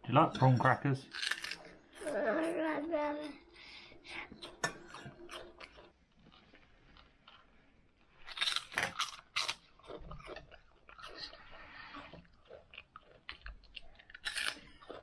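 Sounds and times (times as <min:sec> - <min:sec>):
crackers being crunched: 0:01.1 - 0:01.7, 0:08.2 - 0:11.3, 0:12.5 - 0:15.0.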